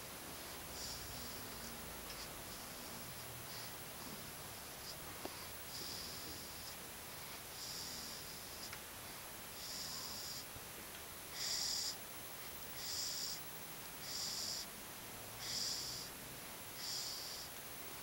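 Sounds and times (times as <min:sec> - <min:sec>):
person snoring softly: 0:00.3 - 0:08.8, 0:09.5 - 0:10.5, 0:11.3 - 0:12.0, 0:12.7 - 0:14.7, 0:15.4 - 0:16.1, 0:16.8 - 0:17.6.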